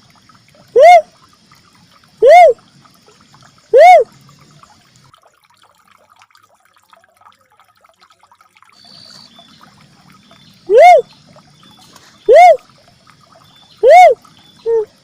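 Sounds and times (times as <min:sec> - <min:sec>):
faint water trickle: 0:00.0 - 0:15.0
bird call whoop: 0:00.8 - 0:01.1, 0:02.2 - 0:02.6, 0:03.7 - 0:04.1, 0:10.7 - 0:11.1, 0:12.3 - 0:12.6, 0:13.8 - 0:14.9.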